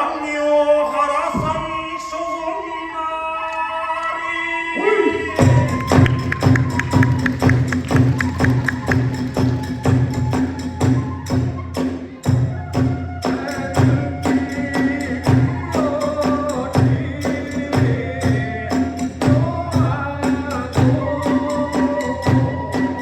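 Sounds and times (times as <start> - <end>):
bamboo flute melody: 0.0 - 23.0
drums beating fast rhythm: 5.1 - 23.0.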